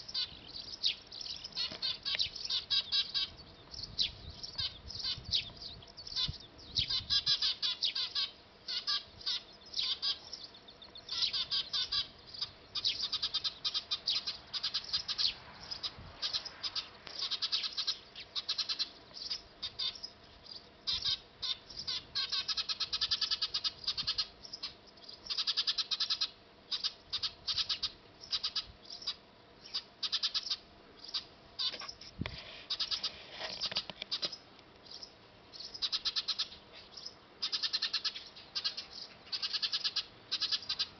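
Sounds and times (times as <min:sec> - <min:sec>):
sparrows chirping: 0:00.0 - 0:40.9.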